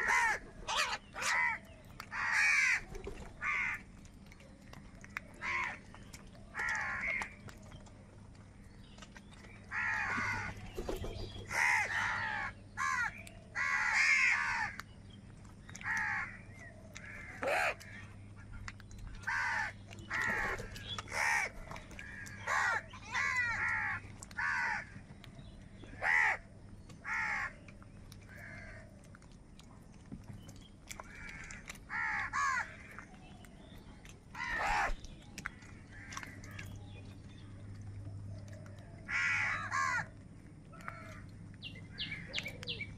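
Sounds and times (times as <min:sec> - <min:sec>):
crows cawing: 0:00.0 - 0:03.9, 0:05.4 - 0:05.8, 0:06.5 - 0:07.4, 0:09.7 - 0:10.6, 0:11.5 - 0:14.8, 0:15.8 - 0:18.0, 0:19.3 - 0:25.0, 0:25.9 - 0:27.6, 0:28.3 - 0:29.0, 0:31.0 - 0:33.0, 0:34.4 - 0:36.6, 0:39.1 - 0:40.1, 0:40.8 - 0:41.3.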